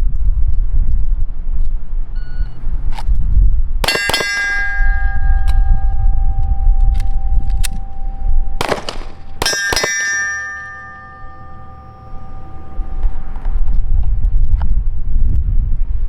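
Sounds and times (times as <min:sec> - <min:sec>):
wind rumbling on microphone: 0:00.0 - 0:09.5, 0:12.4 - 0:16.0
pistol shots: 0:03.8 - 0:05.6, 0:08.6 - 0:12.6
steel targets ringing: 0:03.8 - 0:13.7.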